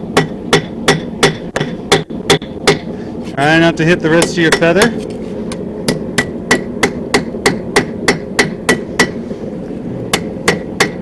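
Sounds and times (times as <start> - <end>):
hammer striking steel on anvil: 0.1 - 2.9, 4.1 - 5.0, 5.9 - 9.2, 10.1 - 11.0.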